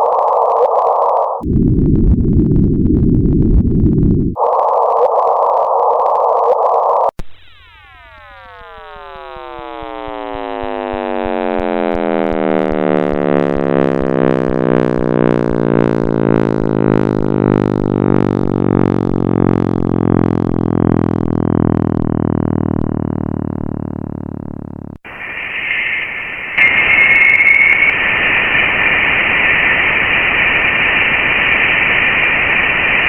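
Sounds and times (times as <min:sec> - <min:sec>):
cascade of falling tones: 0:07.3 - 0:15.9, 0:25.1 - 0:33.0
electronic hiss: 0:25.1 - 0:33.0
steady synthetic tone: 0:25.1 - 0:33.0.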